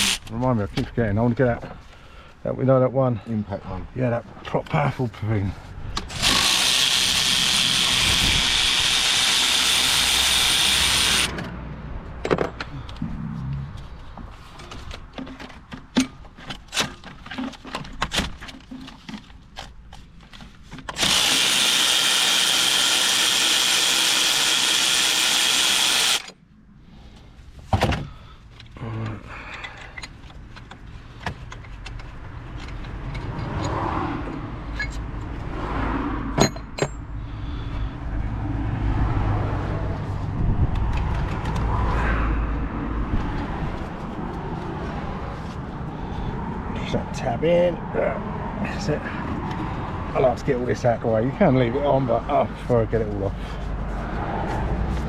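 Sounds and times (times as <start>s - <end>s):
cordless power tool running: 0.0s - 0.3s, 6.1s - 11.4s, 21.0s - 26.3s.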